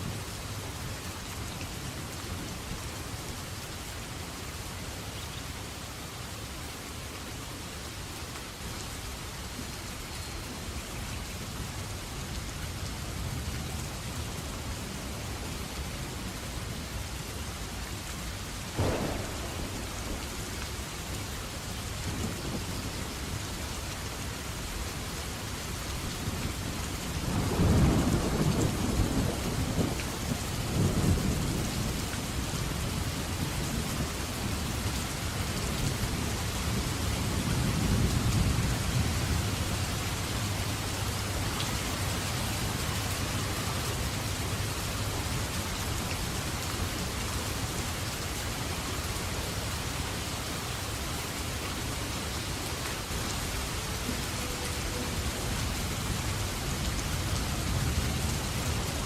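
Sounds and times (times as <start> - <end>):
steady rain falling: 0.0 - 59.0
thunder rumbling: 18.7 - 23.4.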